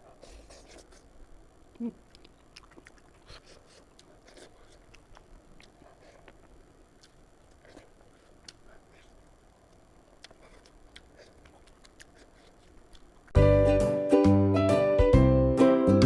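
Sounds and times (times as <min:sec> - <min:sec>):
chewing clicks and smacks: 0:02.1 - 0:13.4.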